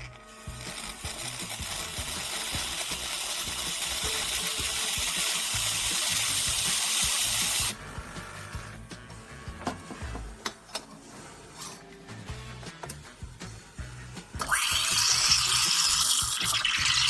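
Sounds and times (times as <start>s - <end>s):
espresso steam wand hissing: 0.2s - 7.8s, 14.4s - 17.0s.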